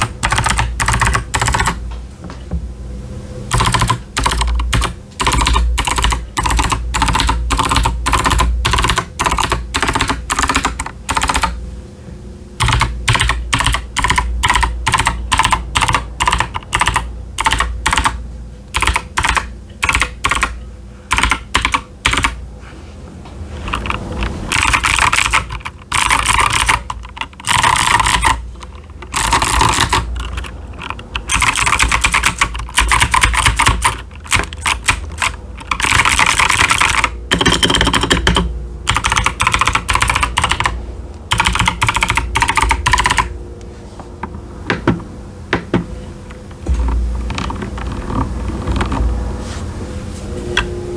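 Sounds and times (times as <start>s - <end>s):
clicky keyboard typing: 0.0s - 1.8s, 3.5s - 11.6s, 12.6s - 22.4s, 23.7s - 43.3s.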